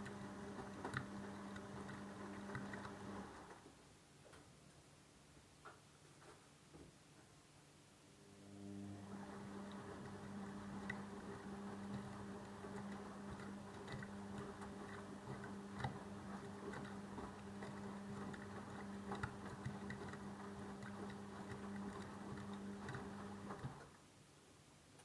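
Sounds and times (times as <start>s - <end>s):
washing machine motor hum: 0.0s - 3.7s, 8.2s - 24.0s.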